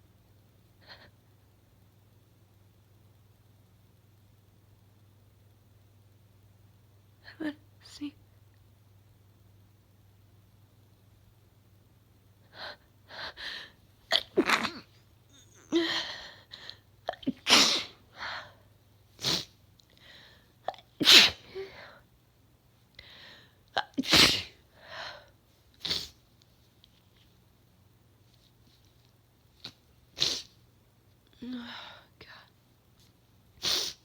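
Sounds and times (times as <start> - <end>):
woman gasping breaths: 12.5 - 13.8, 15.6 - 16.8
woman sneezing: 14.1 - 16.1, 17.1 - 18.0, 21.0 - 21.5, 23.9 - 24.6.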